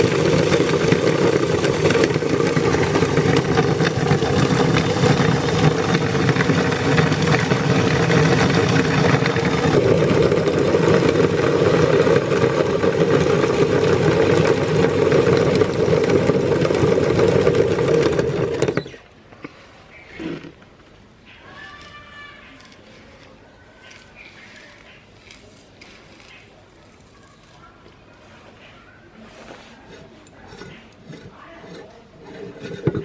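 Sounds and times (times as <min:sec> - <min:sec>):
meat grinder motor running: 0:00.0 - 0:19.0, 0:29.9 - 0:33.0.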